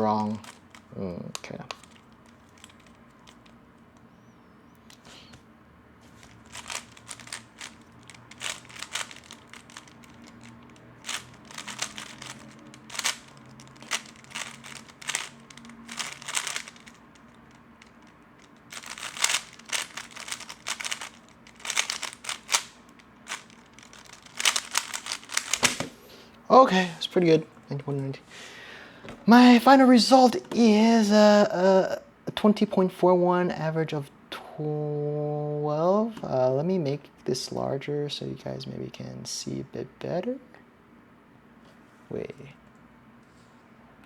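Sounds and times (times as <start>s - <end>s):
plastic puzzle cube clicking: 1.6s - 3.5s, 6.2s - 25.9s.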